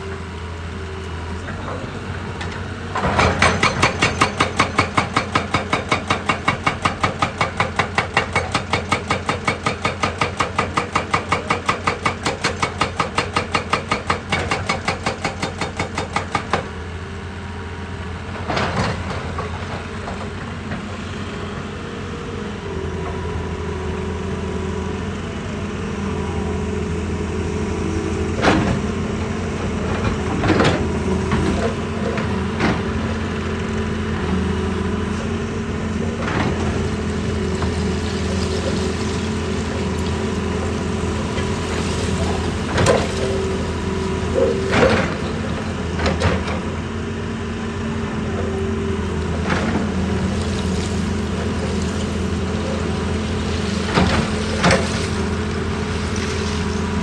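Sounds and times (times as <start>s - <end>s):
diesel engine running: 0.0s - 57.0s
machine hammering rock: 3.0s - 16.8s, 36.3s - 46.6s.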